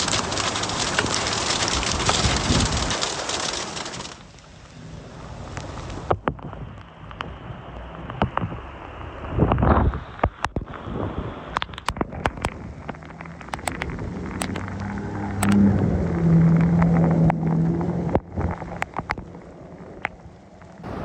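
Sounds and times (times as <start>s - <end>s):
floodwater rushing: 0.0s - 21.0s
vehicle noise: 0.0s - 21.0s
sharp taps and knocks: 11.5s - 14.8s.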